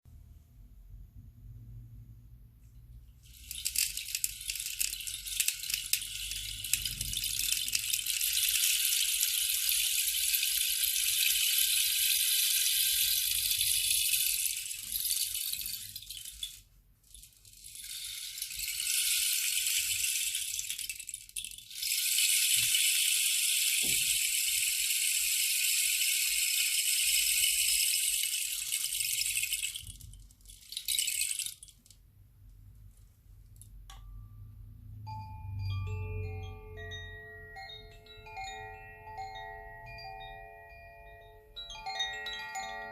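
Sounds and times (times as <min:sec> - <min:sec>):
rain stick trickling: 0:03.2 - 0:32.0.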